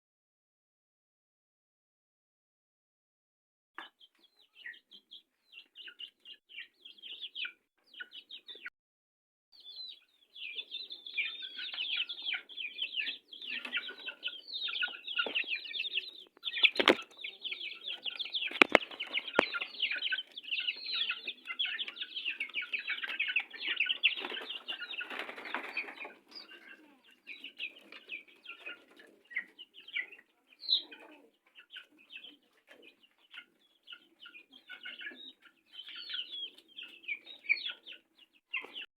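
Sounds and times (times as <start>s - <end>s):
chickens clucking and chirping: 3.8s - 8.7s, 9.6s - 38.9s
wings flapping: 16.6s - 17.2s, 18.5s - 19.7s, 24.0s - 26.2s.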